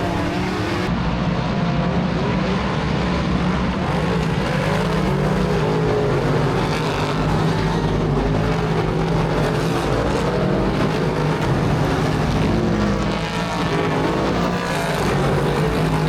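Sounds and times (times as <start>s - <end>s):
race car engines running: 0.0s - 16.0s.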